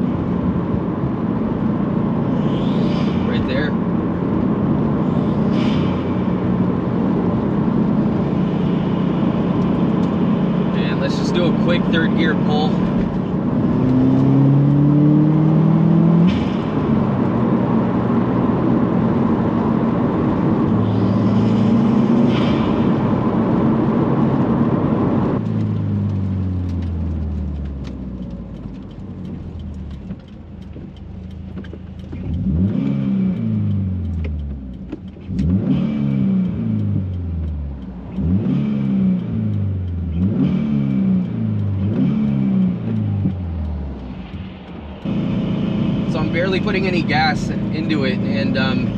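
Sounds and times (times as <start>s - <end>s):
car engine revving: 0.0s - 48.9s
turbo hiss: 2.3s - 3.8s.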